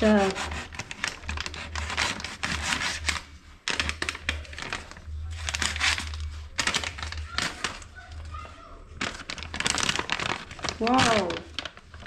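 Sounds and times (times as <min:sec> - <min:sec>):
paper bag rustling and tearing: 0:00.0 - 0:08.4, 0:09.0 - 0:12.0.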